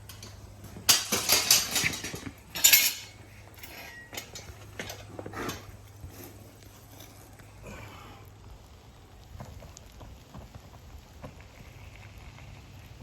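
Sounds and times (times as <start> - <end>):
metal clanking and clinking: 0.0 - 5.8.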